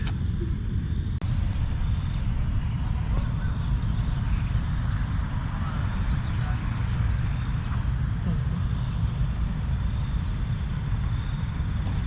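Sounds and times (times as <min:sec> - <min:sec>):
high insect drone: 0:00.0 - 0:12.0
wind buffeting microphone: 0:00.0 - 0:12.0
faint bird chirps: 0:00.4 - 0:04.6.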